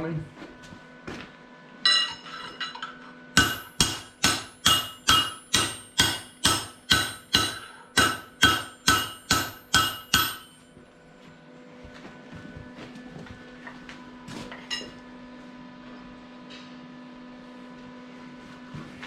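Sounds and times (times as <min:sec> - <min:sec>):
hammer ringing on steel bar: 0:03.4 - 0:10.7.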